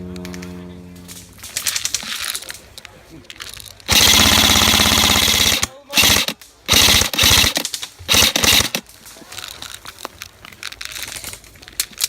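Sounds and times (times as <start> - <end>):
airsoft rifle clicks: 1.1 - 12.0
airsoft rifle full-auto bursts: 3.9 - 8.8.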